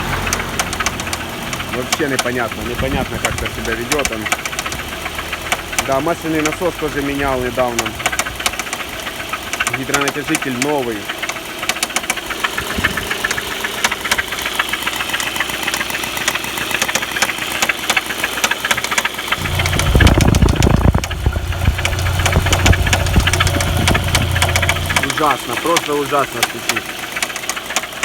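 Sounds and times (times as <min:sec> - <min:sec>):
car engine ticking knock: 0:00.0 - 0:28.0
low steady hum: 0:19.4 - 0:25.0.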